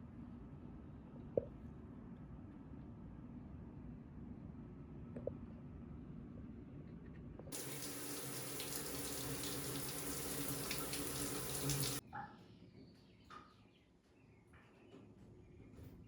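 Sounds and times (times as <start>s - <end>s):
tap water running into sink: 7.5s - 12.0s.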